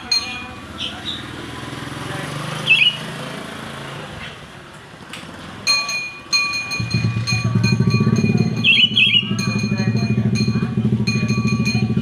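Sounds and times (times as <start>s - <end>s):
metallic ting strikes: 0.0s - 0.6s, 5.7s - 12.0s
bird chirp: 2.6s - 3.0s, 8.4s - 9.5s
low engine rumble: 5.7s - 12.0s.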